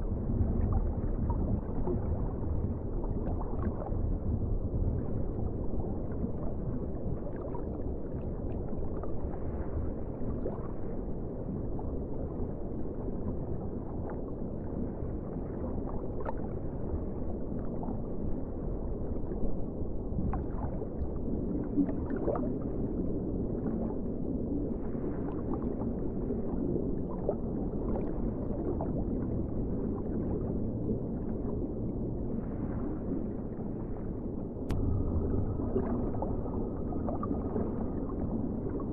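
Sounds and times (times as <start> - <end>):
underwater rumble of moving water: 0.0 - 38.9
faint rising tone: 34.7 - 38.9.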